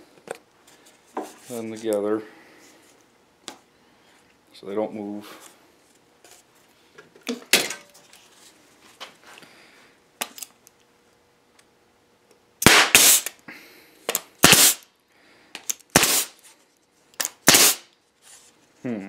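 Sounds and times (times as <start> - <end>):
staple gun shots: 12.6 - 13.3, 14.1 - 14.8, 15.9 - 16.3, 17.2 - 17.8.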